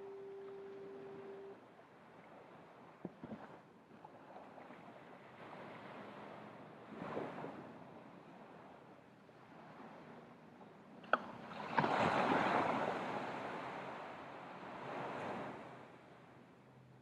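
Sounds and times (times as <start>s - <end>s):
fog horn: 0.0s - 1.6s
wave surging: 0.0s - 1.6s
surf: 0.0s - 16.4s.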